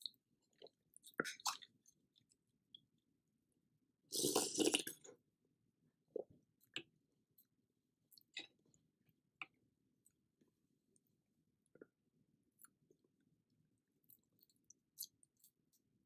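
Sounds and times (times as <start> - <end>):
soft chewing sounds: 0.0 - 3.0, 6.1 - 16.0
person slurping noodles: 4.1 - 5.0.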